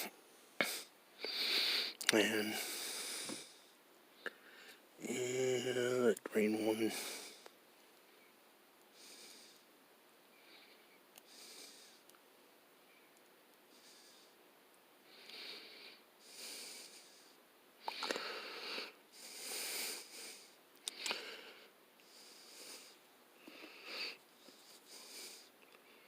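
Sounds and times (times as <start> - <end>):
man breathing through nose: 0.6 - 2.0, 2.6 - 4.8, 6.9 - 7.5, 8.9 - 9.7, 10.4 - 12.1, 13.7 - 14.4, 15.1 - 26.0.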